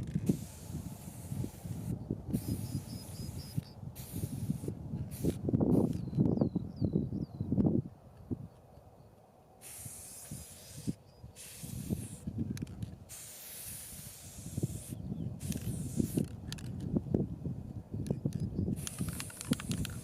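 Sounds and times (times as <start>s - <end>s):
spray can hissing: 0.3s - 5.9s, 9.6s - 12.2s, 13.1s - 16.6s, 18.8s - 20.0s.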